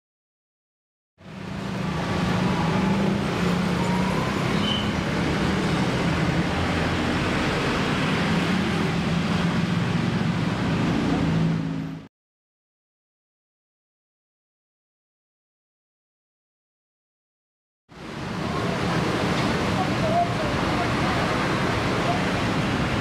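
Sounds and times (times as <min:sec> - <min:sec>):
road and traffic noise: 0:01.2 - 0:12.1, 0:17.9 - 0:23.0.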